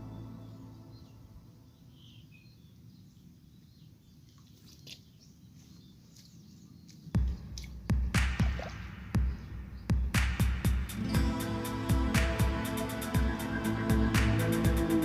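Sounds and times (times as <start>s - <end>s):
music: 0.0s - 1.6s, 7.2s - 15.0s
faint bird chirps: 0.0s - 11.2s.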